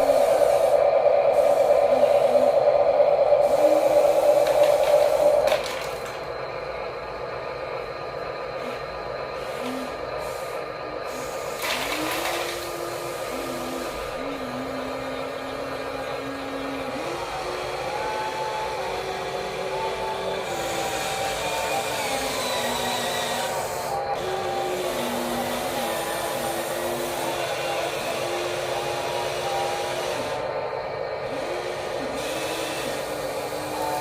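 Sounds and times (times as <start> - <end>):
small electric motors whining: 8.6 - 30.6, 31.2 - 34.0.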